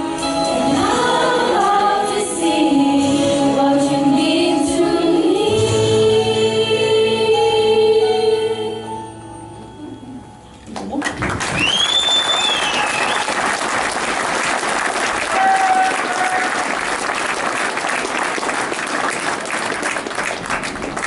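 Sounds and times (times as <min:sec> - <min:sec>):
audience clapping: 0:10.7 - 0:21.0
shrill high cheer: 0:11.5 - 0:13.9, 0:15.0 - 0:17.2.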